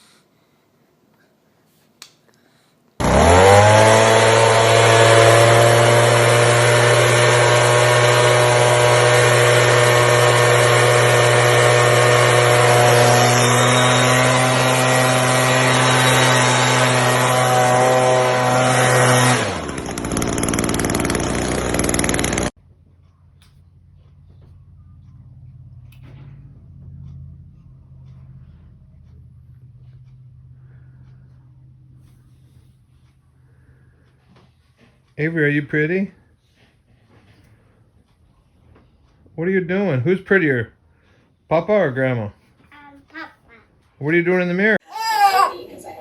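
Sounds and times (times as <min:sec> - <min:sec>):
motor running: 0:03.0 - 0:22.5
noisy whirring: 0:03.0 - 0:22.5.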